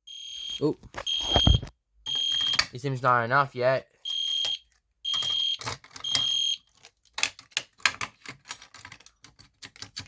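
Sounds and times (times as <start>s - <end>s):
fire alarm horn blasts: 0.1s - 2.5s, 4.0s - 6.6s.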